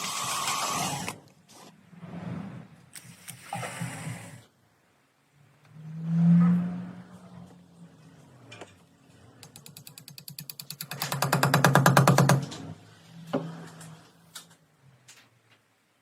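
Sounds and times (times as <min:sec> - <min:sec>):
rapid mechanical clicks: 0:09.4 - 0:12.6.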